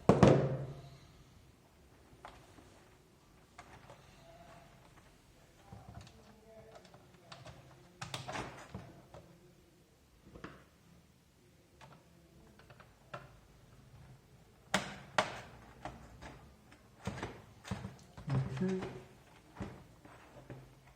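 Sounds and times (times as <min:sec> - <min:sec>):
plastic keyboard parts clicking: 0:05.9 - 0:09.2, 0:11.8 - 0:13.4.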